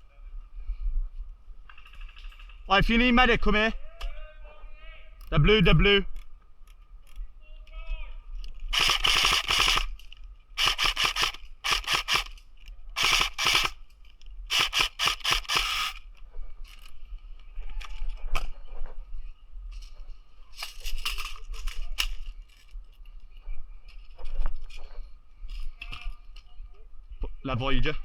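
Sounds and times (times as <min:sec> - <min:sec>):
scattered gun cracks: 0:08.6 - 0:16.1
airsoft rifle full-auto bursts: 0:08.7 - 0:12.4, 0:13.0 - 0:13.9, 0:14.5 - 0:16.1.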